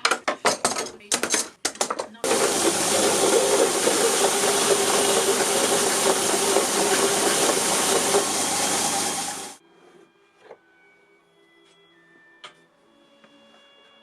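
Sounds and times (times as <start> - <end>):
power tool hissing: 2.2 - 9.6.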